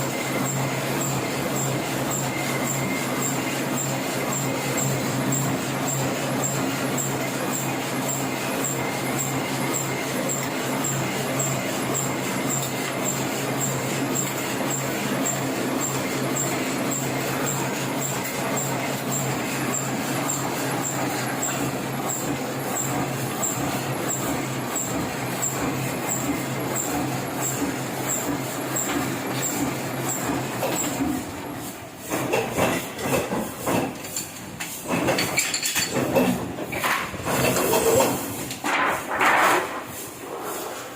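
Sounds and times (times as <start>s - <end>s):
steady machine hum: 0.0s - 32.1s
printing press clattering: 0.0s - 40.2s.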